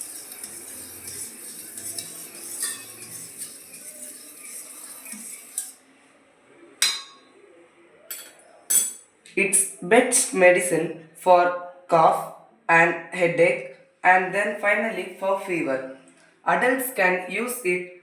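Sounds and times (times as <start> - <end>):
spoon clinking against bowl: 0.0 - 5.8, 6.8 - 7.2, 8.1 - 9.0
spoon stirring in a bowl: 0.0 - 5.8, 8.1 - 9.1.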